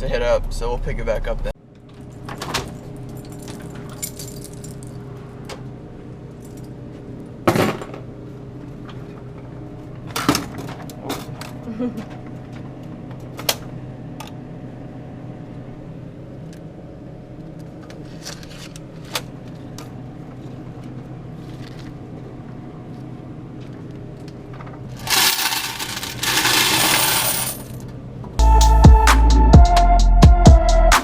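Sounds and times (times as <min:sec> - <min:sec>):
coins clinking: 0:25.0 - 0:27.8
coins rattling and pouring: 0:25.0 - 0:27.8
music with a beat: 0:28.4 - 0:31.0.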